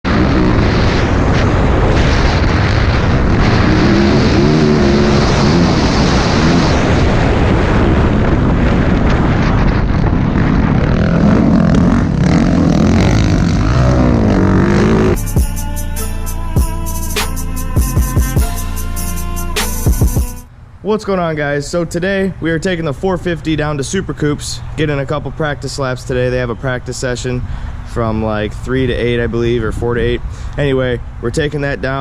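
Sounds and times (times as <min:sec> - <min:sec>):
dirt bike engine revving: 0:00.0 - 0:07.0, 0:10.4 - 0:20.4
loud steady rushing noise: 0:00.1 - 0:20.5.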